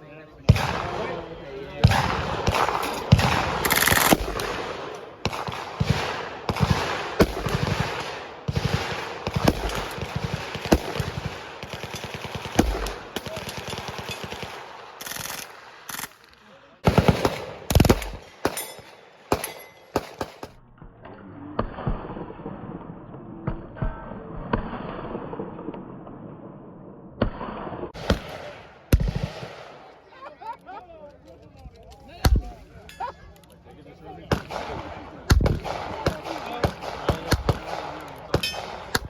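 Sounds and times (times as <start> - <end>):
single gunshots: 0.5 - 15.7, 16.8 - 20.6, 27.2 - 29.9, 34.3 - 39.0
automatic gunfire bursts: 1.8 - 16.2, 16.8 - 20.6, 28.0 - 29.9, 34.3 - 39.0.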